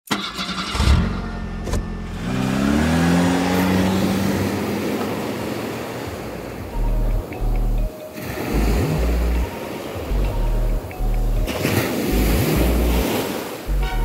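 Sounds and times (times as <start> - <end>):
engine revving: 0.1 - 7.2, 8.5 - 9.5.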